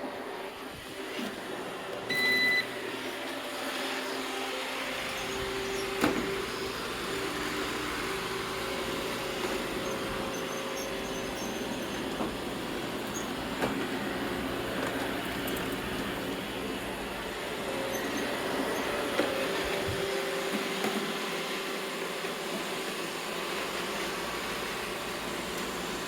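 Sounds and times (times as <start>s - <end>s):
robot vacuum motor hum: 0.0s - 26.0s
short electronic beep: 2.1s - 2.7s.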